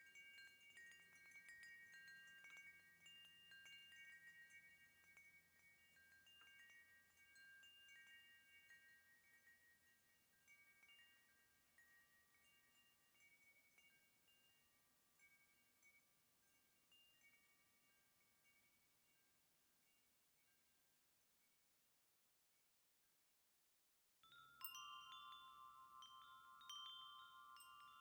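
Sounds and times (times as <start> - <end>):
wind chime ringing: 24.2 - 28.0.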